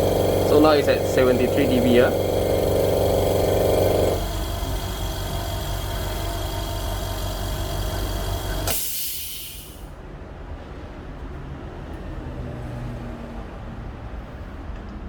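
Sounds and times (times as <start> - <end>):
air compressor running: 0.0 - 9.9
short loud air hiss: 8.6 - 9.9.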